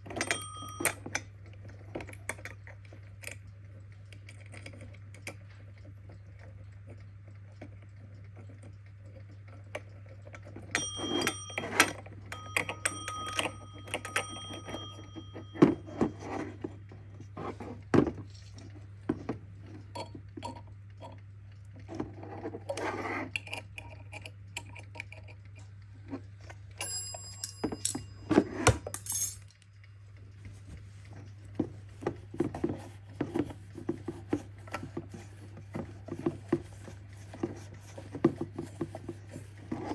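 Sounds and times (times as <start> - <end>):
alarm clock bells ringing: 0.2 - 1.1, 10.7 - 16.2, 26.8 - 28.7.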